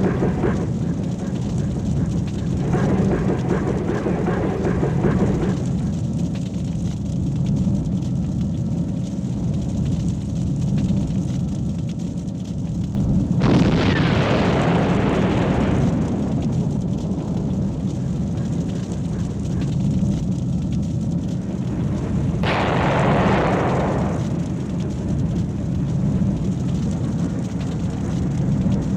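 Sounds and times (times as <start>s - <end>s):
explosion blasts: 0.0s - 6.2s, 13.0s - 19.7s, 21.4s - 28.9s
steady low rumble: 0.0s - 28.9s.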